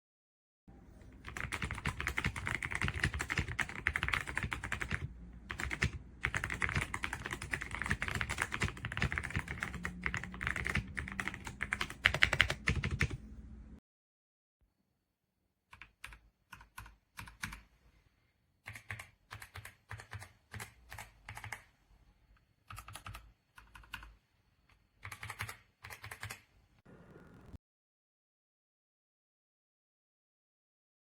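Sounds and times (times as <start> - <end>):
mechanical keyboard typing: 1.2 - 13.2, 15.8 - 17.6, 18.6 - 21.7, 22.6 - 24.2, 25.0 - 26.5.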